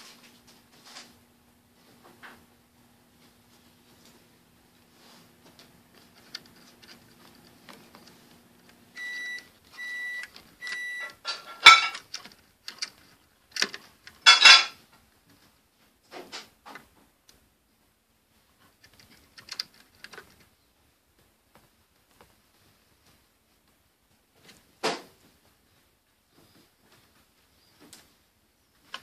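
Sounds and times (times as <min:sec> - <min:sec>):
rustling clatter: 0:05.0 - 0:08.4, 0:10.3 - 0:17.0, 0:18.4 - 0:20.6
alarm clock beeping: 0:09.0 - 0:11.9.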